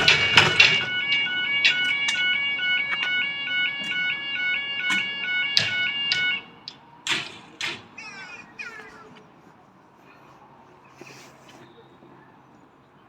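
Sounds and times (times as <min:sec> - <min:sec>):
sharp knocks: 0:00.0 - 0:08.0
two-tone crossing alarm warble: 0:00.0 - 0:08.2.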